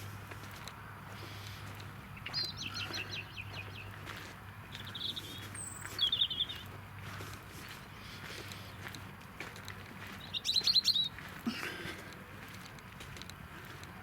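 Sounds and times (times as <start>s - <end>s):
small songbirds chirping: 2.1s - 6.8s, 10.0s - 11.3s.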